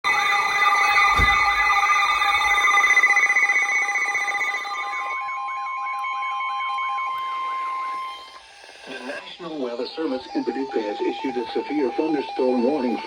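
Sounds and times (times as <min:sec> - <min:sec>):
warbling siren-like tone: 0:00.1 - 0:08.3.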